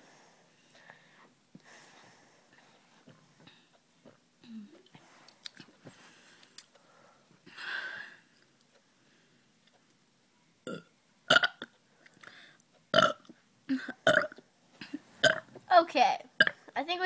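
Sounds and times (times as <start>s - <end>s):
girl burping: 13.0s - 15.4s.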